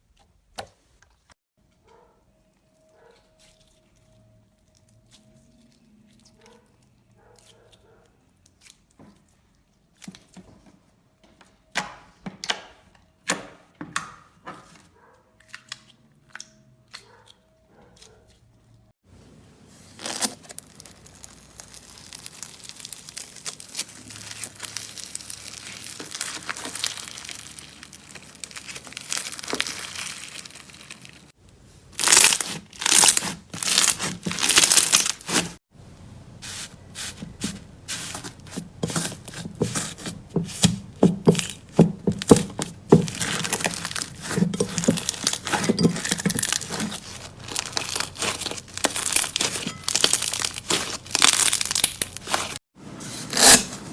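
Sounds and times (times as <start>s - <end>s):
slime crackling and popping: 20.1s - 31.4s, 32.0s - 35.6s, 42.1s - 52.6s.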